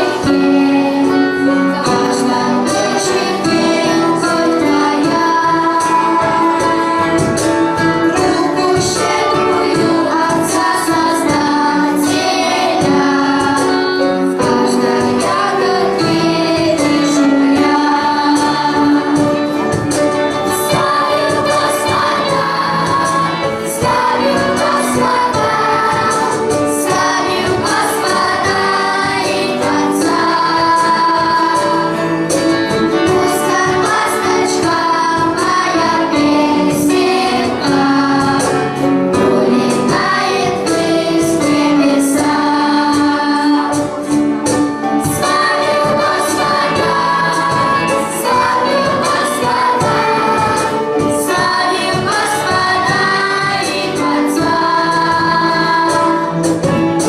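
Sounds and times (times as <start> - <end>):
choir singing: 0.0 - 44.2, 44.8 - 57.0
instrumental accompaniment with beat: 0.0 - 57.0.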